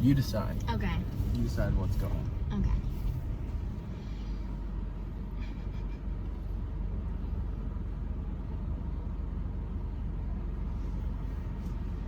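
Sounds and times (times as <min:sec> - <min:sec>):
car engine idling: 0:00.0 - 0:12.0.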